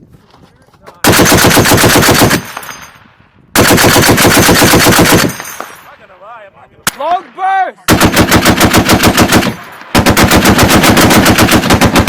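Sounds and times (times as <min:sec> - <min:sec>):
machine gun automatic fire: 0:01.0 - 0:02.9, 0:03.6 - 0:05.8, 0:07.9 - 0:12.0.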